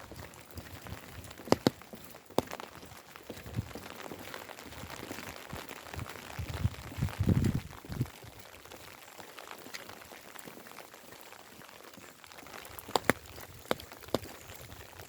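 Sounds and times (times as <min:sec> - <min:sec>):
steady rain falling: 0:00.0 - 0:15.0
sharp drip taps: 0:01.4 - 0:02.6.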